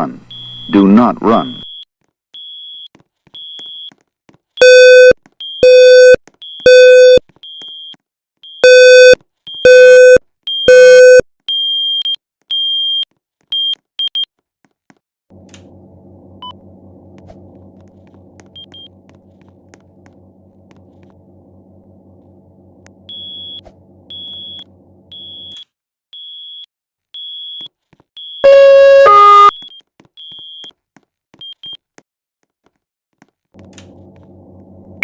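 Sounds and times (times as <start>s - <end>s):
high electronic alarm beep: 0.3s - 1.8s, 4.6s - 7.9s, 8.5s - 13.0s, 23.1s - 25.6s, 28.2s - 30.7s
low electrical hum: 15.3s - 25.5s, 33.6s - 35.0s.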